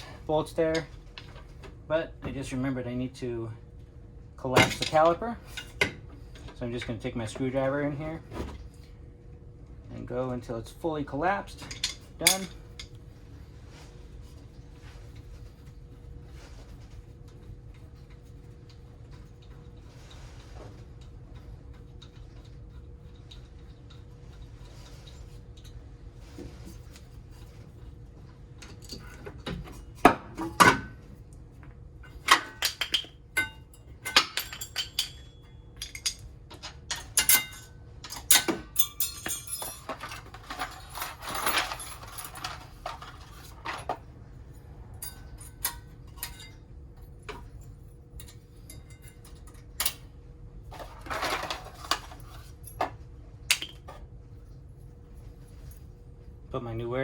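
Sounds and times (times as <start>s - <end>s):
low steady hum: 0.0s - 57.0s
metal clinks of brake parts: 32.3s - 42.6s, 45.0s - 46.6s.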